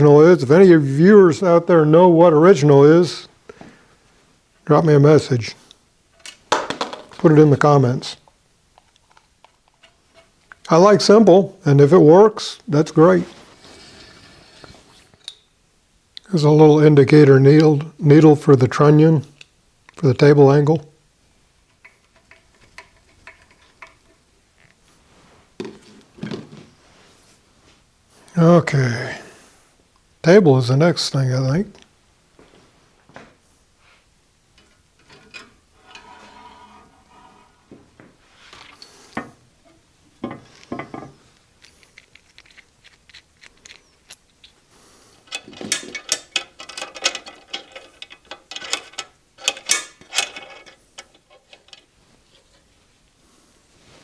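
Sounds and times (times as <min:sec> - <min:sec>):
metal parts clunking: 0:06.2 - 0:07.3, 0:21.7 - 0:24.2, 0:38.5 - 0:44.6, 0:45.2 - 0:52.7.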